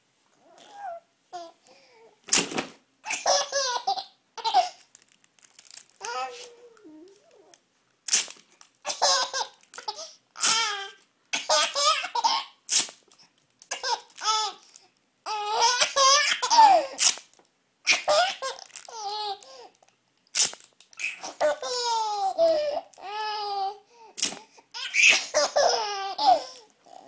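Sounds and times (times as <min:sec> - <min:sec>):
baby laughing: 0:03.1 - 0:04.8, 0:08.9 - 0:12.6, 0:13.7 - 0:14.6, 0:15.3 - 0:17.0, 0:17.9 - 0:19.4, 0:21.0 - 0:23.8, 0:24.7 - 0:26.6
sticky tape pulled off roll: 0:08.1 - 0:08.5, 0:10.4 - 0:10.7, 0:12.7 - 0:13.8, 0:17.0 - 0:17.4, 0:20.3 - 0:21.3, 0:24.2 - 0:24.4.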